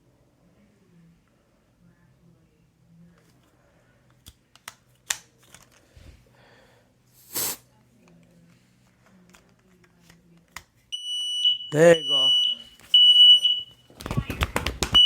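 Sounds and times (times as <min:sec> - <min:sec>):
faint low hum: 0:00.0 - 0:15.0
loud hissing puff: 0:07.2 - 0:07.7.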